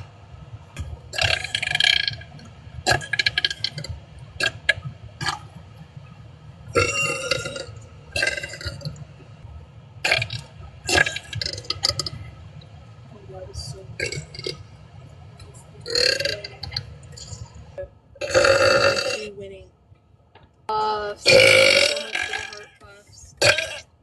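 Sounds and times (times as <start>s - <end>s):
person burping: 15.9s - 16.5s, 18.2s - 19.3s, 21.3s - 22.8s, 23.4s - 23.9s.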